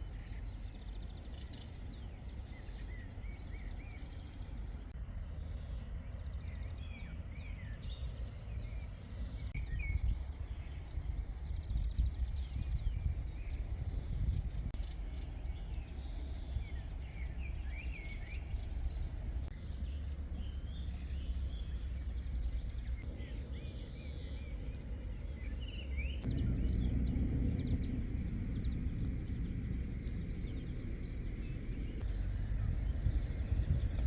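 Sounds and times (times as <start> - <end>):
low outdoor rumble: 0.0 - 34.0
small birds chirping: 0.0 - 34.0.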